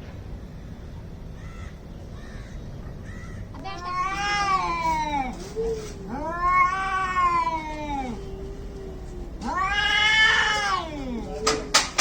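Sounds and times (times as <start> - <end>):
cats yowling: 3.2 - 11.8.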